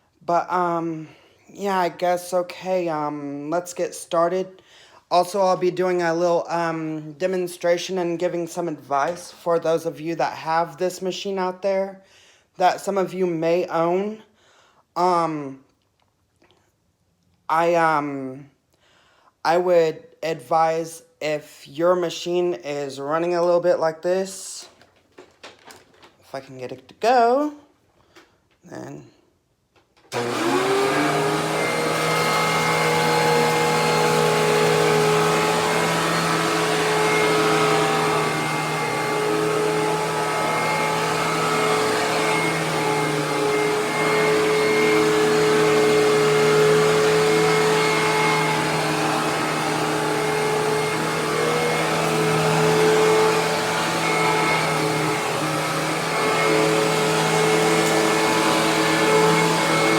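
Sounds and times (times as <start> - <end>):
vacuum cleaner motor running: 5.2 - 9.5, 30.1 - 59.9.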